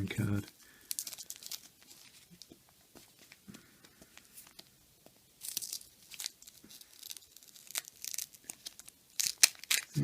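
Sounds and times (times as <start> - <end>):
wrapper crinkling and tearing: 0.3 - 2.5, 5.4 - 10.0.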